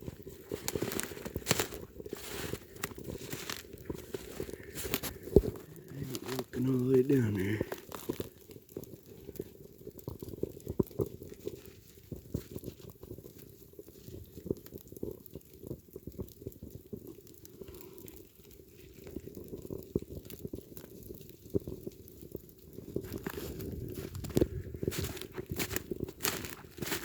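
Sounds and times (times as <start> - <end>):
footsteps crunching in snow: 0.0 - 8.3, 22.8 - 27.0.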